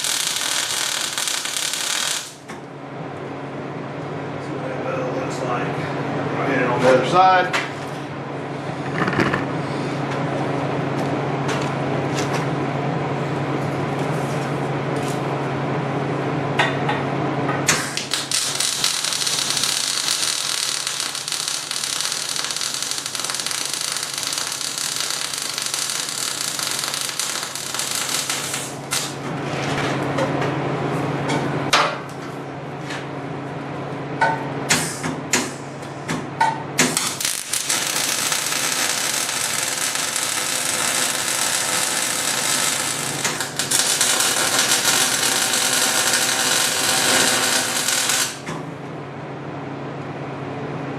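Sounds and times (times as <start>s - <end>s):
welding arc crackling and hissing: 0.0s - 2.5s, 17.7s - 29.2s, 36.8s - 48.5s
steady low hum: 0.0s - 50.9s.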